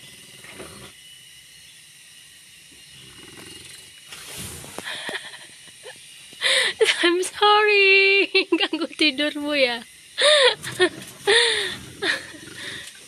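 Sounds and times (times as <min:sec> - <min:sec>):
goat snoring: 0:00.0 - 0:01.0, 0:02.9 - 0:04.9, 0:10.5 - 0:13.0
breathy burst: 0:10.2 - 0:13.0.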